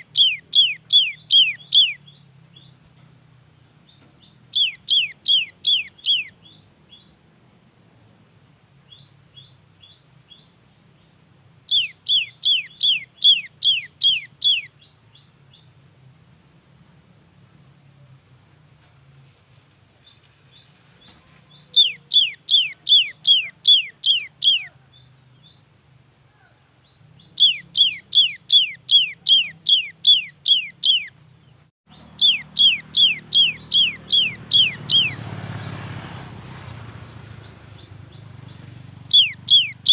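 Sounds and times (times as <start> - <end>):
background hiss: 0.0 - 23.3.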